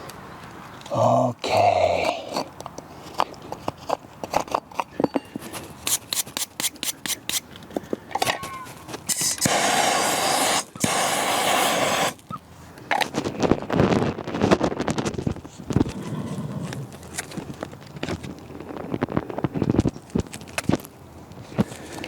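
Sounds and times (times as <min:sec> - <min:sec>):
farrier's tools clicking and scraping: 0:01.9 - 0:09.6.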